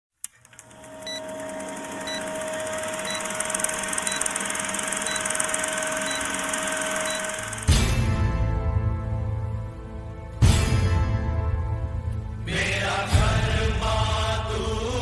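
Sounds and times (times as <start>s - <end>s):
short high beeps: 2.0s - 7.8s.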